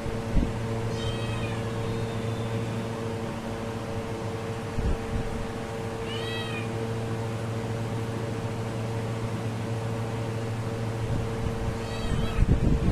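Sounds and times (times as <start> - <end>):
low electrical hum: 0.0 - 12.9
cat meowing: 0.9 - 2.7, 6.0 - 6.8, 11.7 - 12.5.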